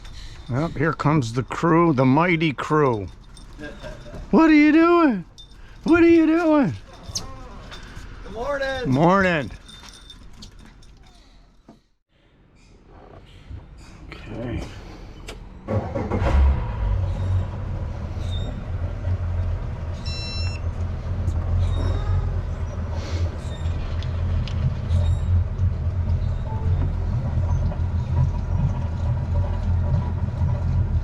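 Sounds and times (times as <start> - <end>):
engine starting and rumbling: 0.0 - 6.9, 14.6 - 31.0
high-pitched beep: 20.1 - 20.6.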